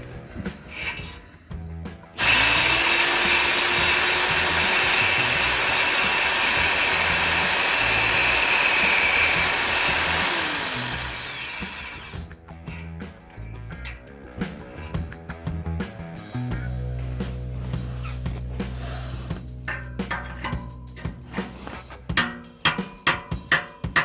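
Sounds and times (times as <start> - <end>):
background music: 0.0 - 24.0
electric power tool whining: 2.1 - 12.9.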